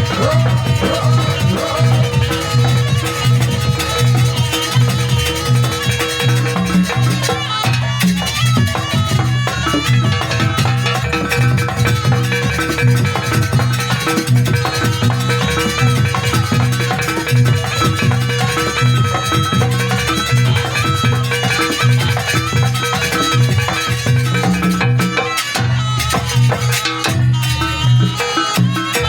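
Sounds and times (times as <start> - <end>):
percussion ensemble playing: 0.0 - 29.0.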